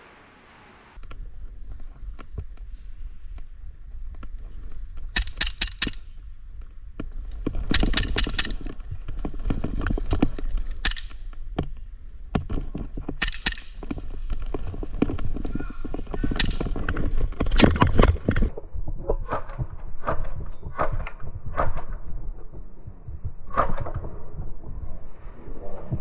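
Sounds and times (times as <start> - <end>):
low rumble: 1.0 - 26.0
airsoft guns firing: 5.1 - 6.3, 7.6 - 8.8, 10.7 - 11.7, 13.2 - 14.0, 16.2 - 16.8.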